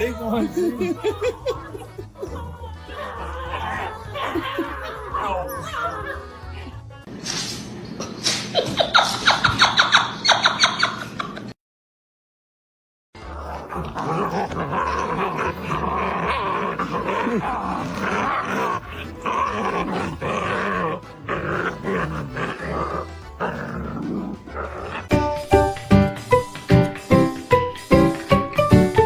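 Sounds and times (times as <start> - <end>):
dog growling: 2.9 - 6.7, 13.2 - 25.2
background music with beat: 25.1 - 29.0.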